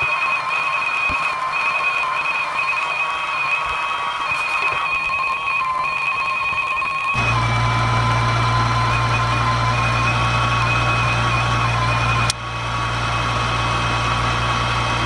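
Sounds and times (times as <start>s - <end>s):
machine hum with high whine: 7.2s - 15.0s.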